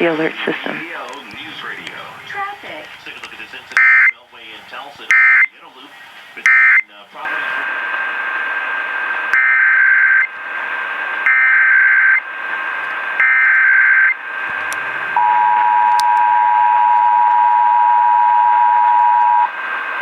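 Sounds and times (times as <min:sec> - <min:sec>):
radio hiss: 0:00.0 - 0:16.4, 0:19.4 - 0:20.0
digital data bursts: 0:03.5 - 0:04.2.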